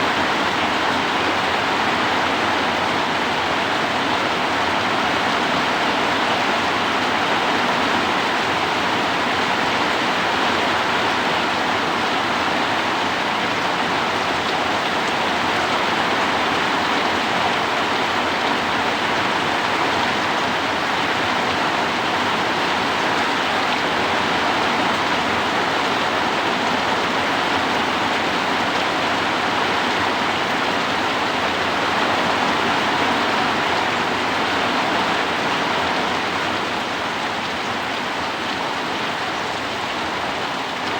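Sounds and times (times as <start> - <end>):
heavy rain: 0.0 - 40.9.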